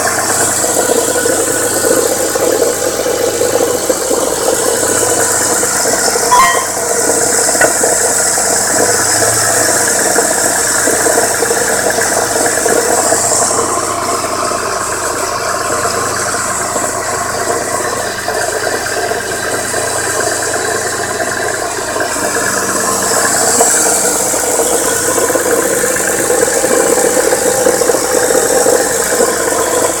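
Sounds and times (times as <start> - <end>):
car engine running: 0.0 - 30.0
fast mechanical engine knocking: 0.0 - 30.0.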